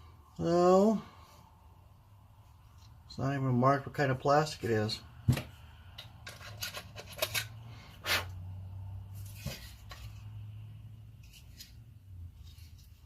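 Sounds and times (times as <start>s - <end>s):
plastic parts clicking and knocking: 5.3s - 7.6s.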